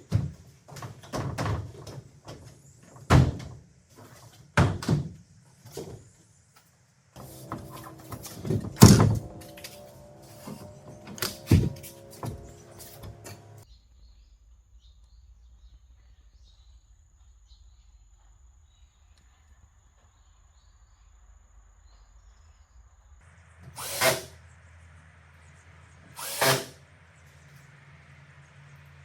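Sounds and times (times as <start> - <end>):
steady low hum: 6.4 - 29.0
power tool bursts: 23.6 - 24.4, 26.1 - 26.8.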